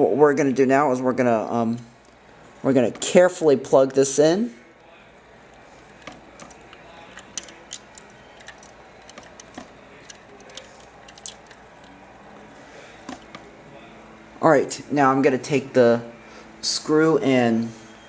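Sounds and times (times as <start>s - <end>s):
small parts clicking and tapping: 5.5s - 12.0s, 13.0s - 13.5s.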